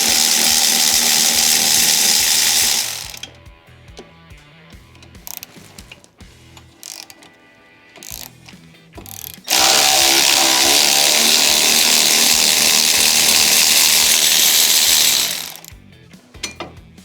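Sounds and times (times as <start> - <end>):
power tool running: 0.0 - 3.3, 6.8 - 7.2, 8.0 - 15.8
ratchet-like clicks: 0.0 - 3.4, 5.0 - 6.0, 6.6 - 7.3, 8.0 - 15.8.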